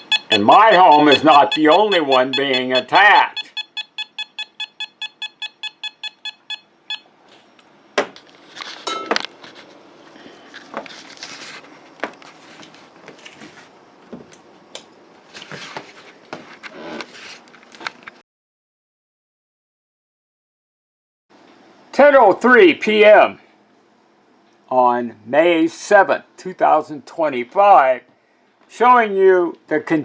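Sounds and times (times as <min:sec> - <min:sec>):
meter beeping fast: 0:00.0 - 0:07.1.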